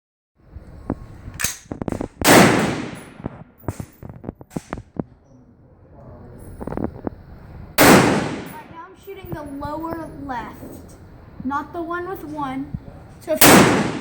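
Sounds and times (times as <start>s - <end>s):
rifle shot: 1.4s - 3.9s, 7.8s - 8.7s, 13.4s - 14.0s.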